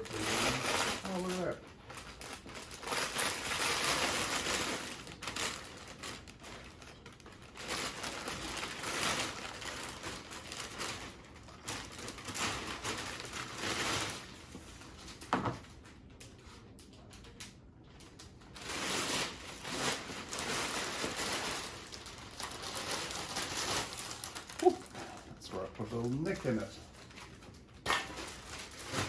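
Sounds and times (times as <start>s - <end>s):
plastic film crinkling and rustling: 0.0s - 29.0s.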